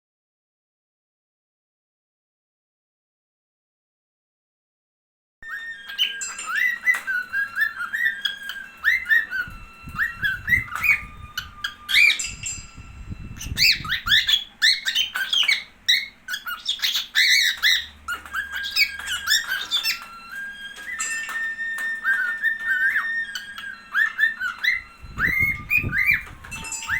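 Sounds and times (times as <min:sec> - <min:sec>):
cockatiel whistled calls: 0:05.4 - 0:26.9.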